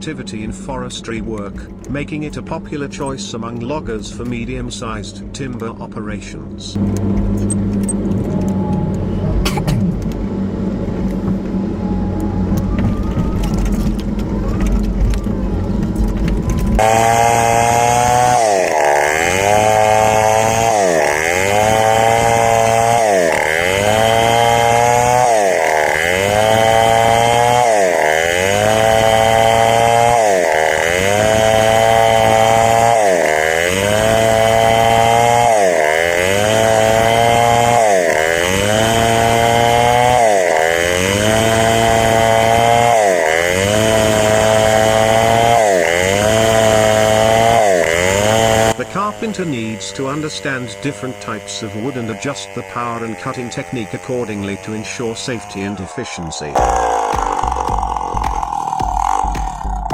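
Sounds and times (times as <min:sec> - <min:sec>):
heavy machine engine humming: 0:00.0 - 0:59.9
chainsaw cutting wood: 0:16.0 - 0:59.9.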